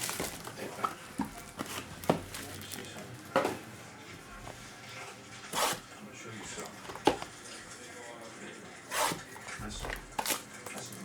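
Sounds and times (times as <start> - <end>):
trading cards and packaging handled: 0.0 - 3.7.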